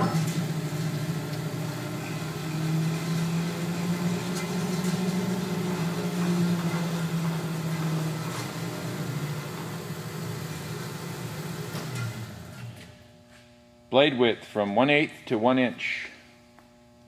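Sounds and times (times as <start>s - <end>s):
bandsaw running: 0.0s - 12.8s.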